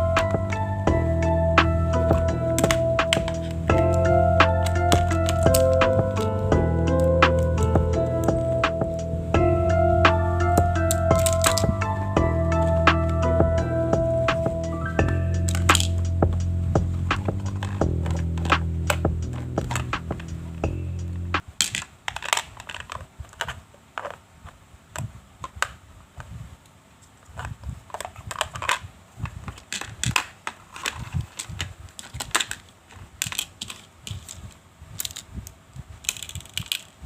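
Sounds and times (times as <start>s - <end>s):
background music: 0.0s - 21.4s.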